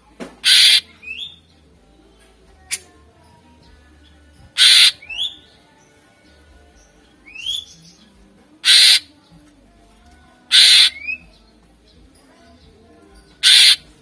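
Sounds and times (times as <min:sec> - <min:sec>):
bird harsh rasping calls: 0:00.4 - 0:01.5, 0:04.5 - 0:05.5, 0:07.2 - 0:08.0, 0:08.6 - 0:09.1, 0:10.5 - 0:11.4, 0:13.3 - 0:14.0.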